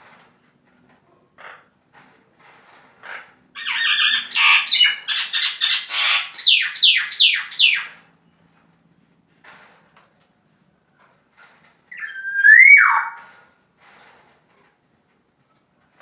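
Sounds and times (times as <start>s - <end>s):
bird harsh scratchy calls: 3.6s - 8.0s, 11.9s - 13.3s
bird downward-sweeping notes: 11.9s - 13.3s.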